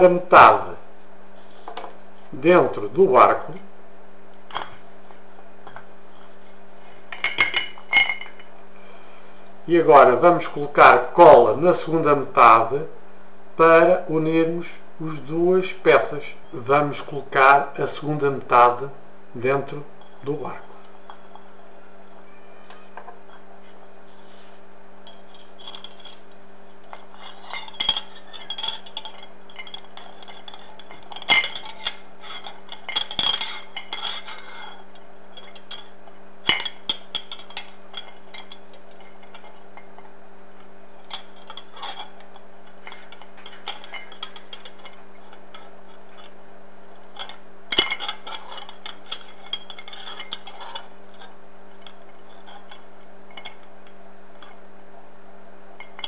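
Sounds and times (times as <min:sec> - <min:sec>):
steady low hum: 0:00.0 - 0:56.0
glass clinking: 0:07.1 - 0:08.5, 0:26.9 - 0:40.1, 0:41.0 - 0:46.3, 0:47.2 - 0:53.7, 0:55.8 - 0:56.0.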